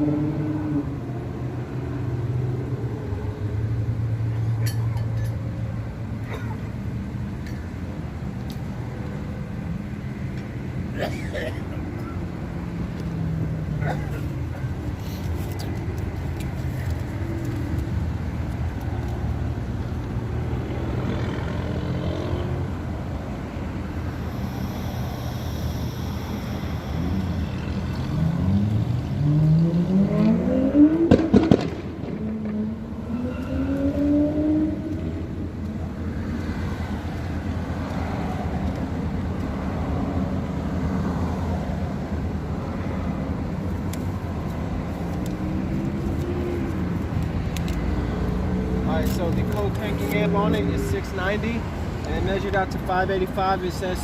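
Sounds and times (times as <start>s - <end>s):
vehicle accelerating: 0.0s - 4.3s, 13.0s - 38.6s.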